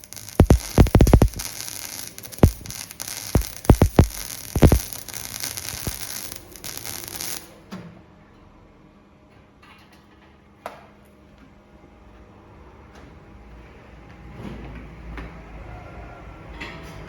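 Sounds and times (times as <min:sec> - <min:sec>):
arc welding hiss and crackle: 0:00.0 - 0:07.5.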